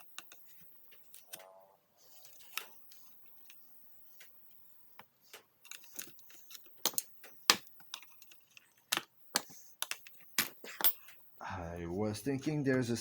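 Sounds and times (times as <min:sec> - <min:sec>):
plastic parts clicking and knocking: 0:04.2 - 0:11.2.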